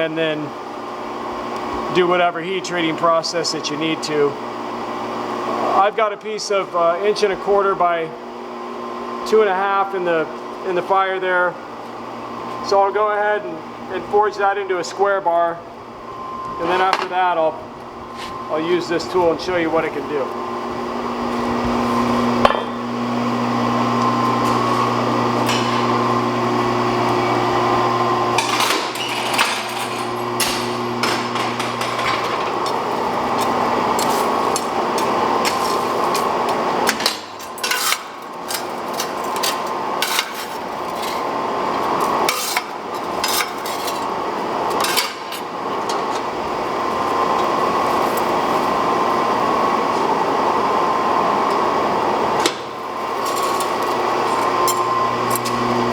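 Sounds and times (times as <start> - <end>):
motor hum: 15.6 - 55.9
power hammer striking hot steel: 28.3 - 35.9.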